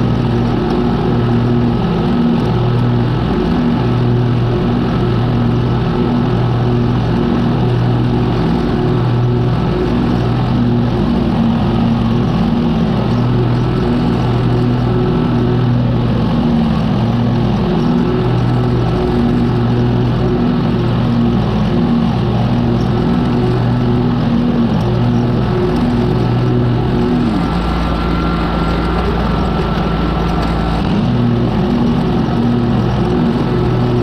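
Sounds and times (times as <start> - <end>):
lawn mower engine cutting grass: 0.0 - 34.0.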